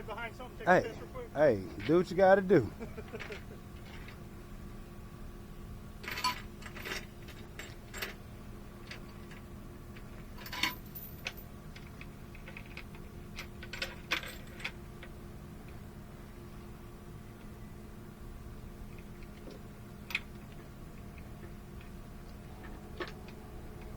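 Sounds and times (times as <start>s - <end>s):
steady low hum: 0.0s - 23.9s.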